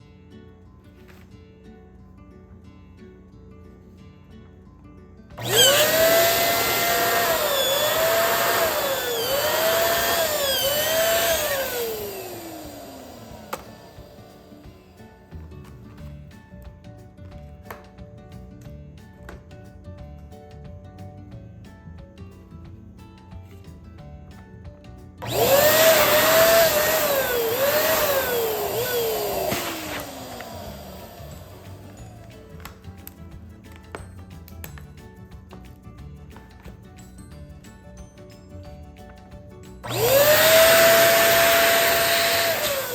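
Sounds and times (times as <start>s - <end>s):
balloon inflator motor whining: 5.4s - 14.9s, 25.2s - 32.4s, 39.8s - 42.9s.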